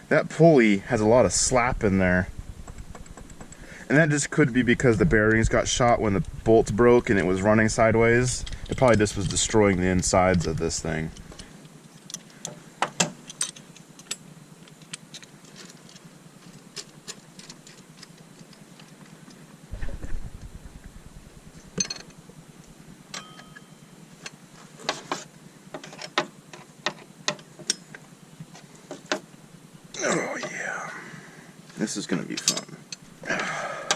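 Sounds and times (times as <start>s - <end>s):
low thump: 19.7s - 21.8s.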